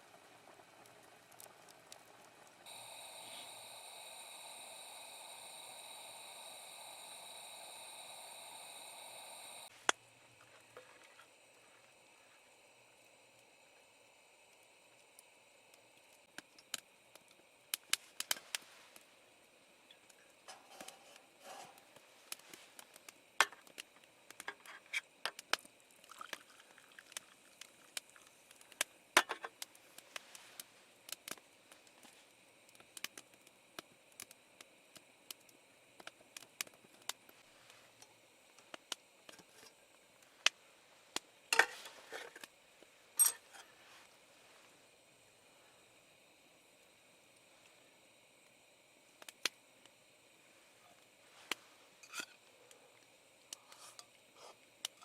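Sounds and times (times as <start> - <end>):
faint steady hum: 0.0 - 55.0
small objects clicking and tapping: 21.9 - 26.4.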